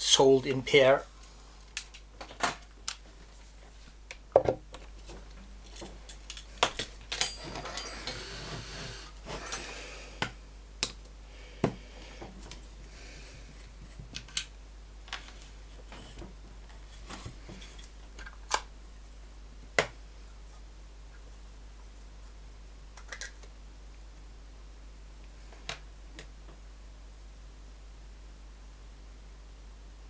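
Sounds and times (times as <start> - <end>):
scraping on workbench: 7.3 - 9.8.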